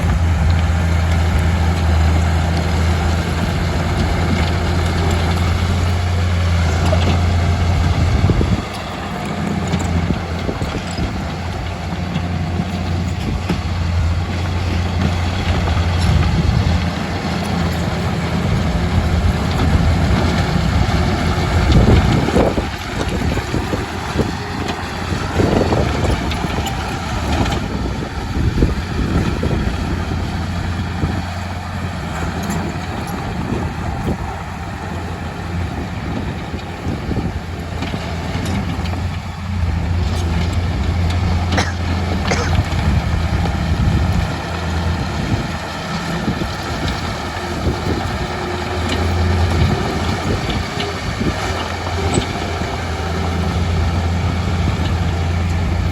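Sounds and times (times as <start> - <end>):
bulldozer diesel engine humming: 0.0 - 55.9
knocks and clanks: 37.7 - 44.3.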